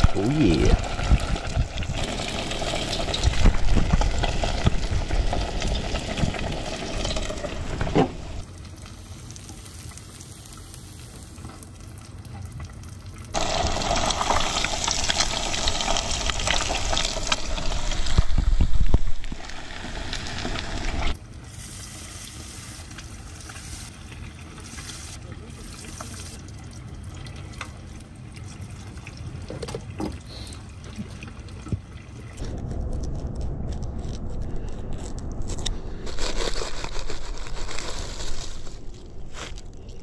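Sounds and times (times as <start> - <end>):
fish frying in hot oil: 0.1 - 7.3, 8.4 - 30.5.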